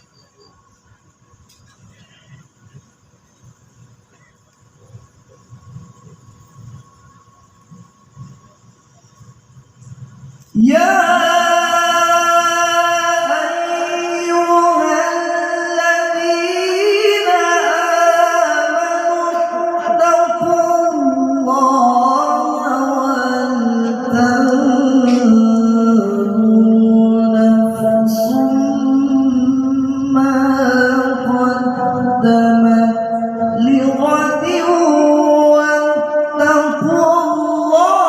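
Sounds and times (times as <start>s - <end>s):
man reciting melodically: 10.6s - 38.0s.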